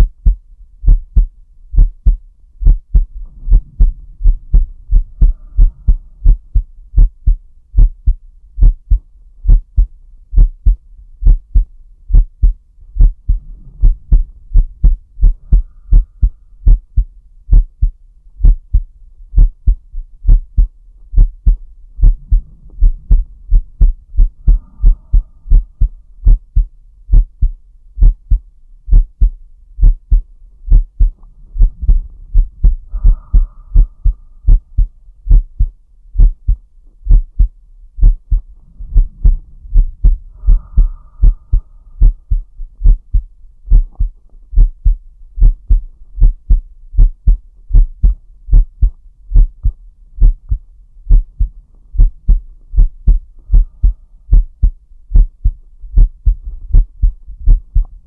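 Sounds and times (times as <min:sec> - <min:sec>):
heartbeat double thump: 0:00.0 - 0:58.0
slow deep breath: 0:02.9 - 0:06.7, 0:13.0 - 0:16.8, 0:21.5 - 0:26.7, 0:31.0 - 0:35.0, 0:38.3 - 0:42.9, 0:53.1 - 0:54.6.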